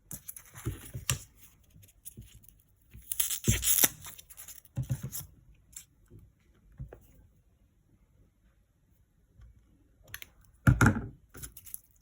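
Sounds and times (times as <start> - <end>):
packaging tearing and crinkling: 3.0 - 4.7.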